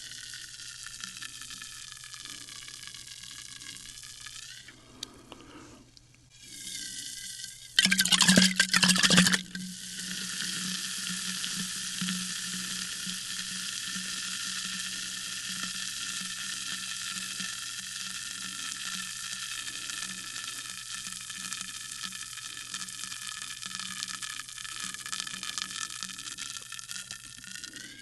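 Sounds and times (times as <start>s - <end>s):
sparkling water fizzing: 6.4s - 27.9s.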